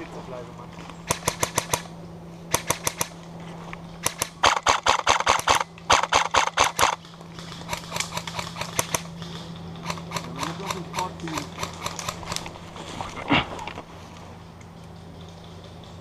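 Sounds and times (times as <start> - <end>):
airsoft guns firing: 1.0 - 1.9, 2.5 - 3.2, 4.0 - 12.6.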